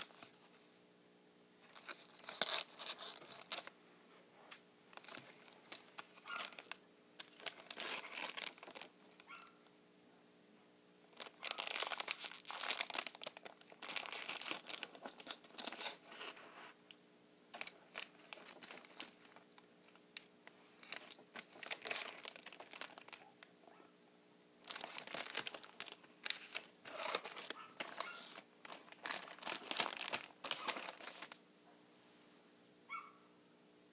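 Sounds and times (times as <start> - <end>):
plastic packaging crinkling: 1.7 - 3.7, 4.9 - 9.5, 11.1 - 16.4, 17.5 - 23.4, 24.6 - 31.4.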